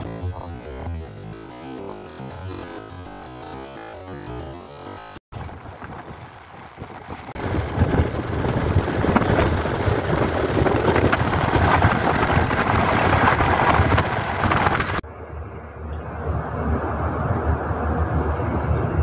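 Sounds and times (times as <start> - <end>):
motorcycle engine: 0.0 - 15.2
wind buffeting microphone: 5.3 - 19.0.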